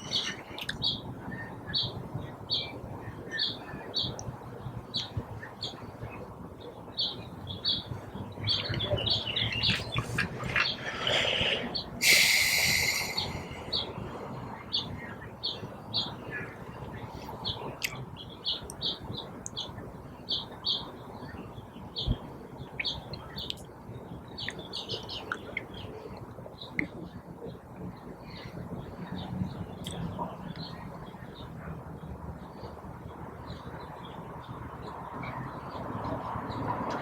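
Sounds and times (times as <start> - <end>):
bird chirping: 0.0 - 1.1, 6.7 - 14.0
loud hiss: 10.8 - 13.9.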